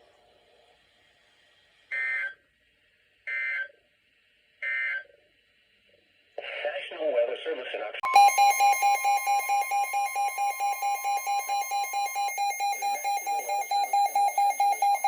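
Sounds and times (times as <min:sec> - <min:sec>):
rapid electronic beeping: 0:08.0 - 0:15.0
steady warning alarm tone: 0:08.0 - 0:15.0.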